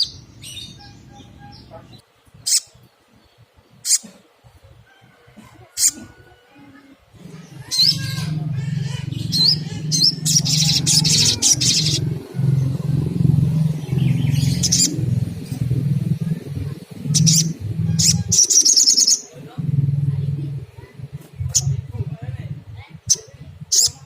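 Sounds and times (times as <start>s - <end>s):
bird chirping and trilling: 0.0s - 4.2s, 7.2s - 24.0s
low steady hum: 6.5s - 24.0s.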